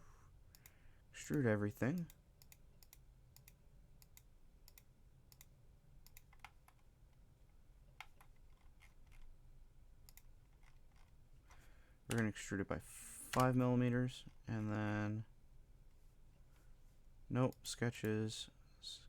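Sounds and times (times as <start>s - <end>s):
mouse and keyboard clicking: 2.0s - 6.8s, 8.0s - 9.3s.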